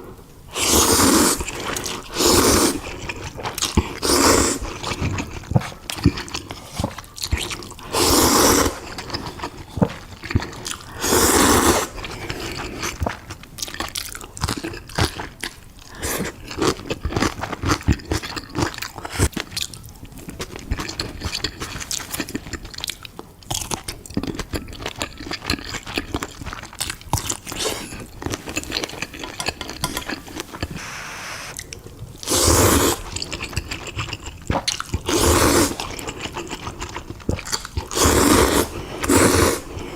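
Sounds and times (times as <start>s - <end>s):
wet chewing: 11.7s - 30.9s, 31.5s - 39.9s.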